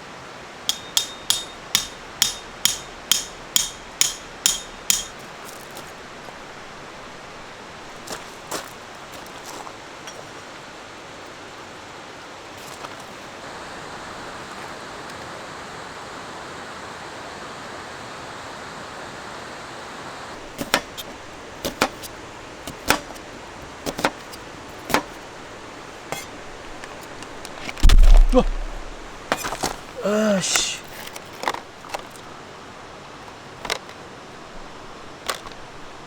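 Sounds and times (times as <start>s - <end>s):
sharp knocks: 0.7s - 5.3s, 20.5s - 22.1s, 22.7s - 25.2s, 27.8s - 29.8s.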